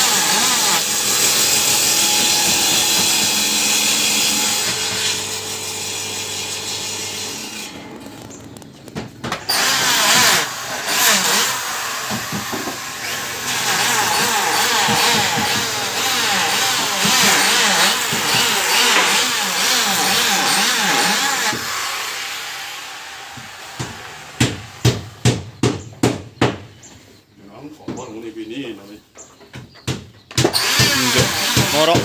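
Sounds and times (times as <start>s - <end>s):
electric planer shaving wood: 0.0s - 8.6s, 9.4s - 24.8s, 30.5s - 32.0s
sharp knocks: 23.4s - 26.7s.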